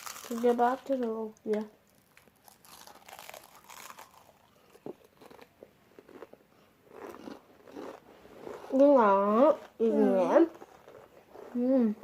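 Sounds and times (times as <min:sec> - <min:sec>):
chips crunching: 0:00.0 - 0:08.8.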